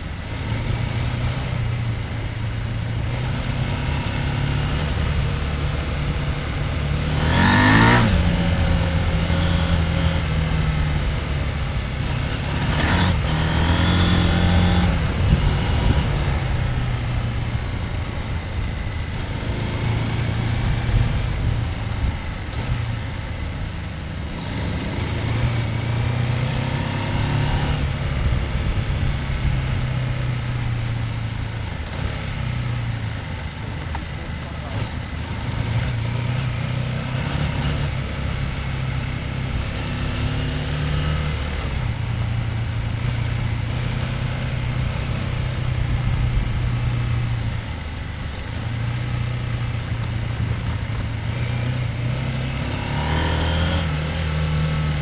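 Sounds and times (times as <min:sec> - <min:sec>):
motorcycle engine running: 0:00.0 - 0:55.0
sharp engine revs: 0:03.2 - 0:10.8, 0:51.2 - 0:55.0.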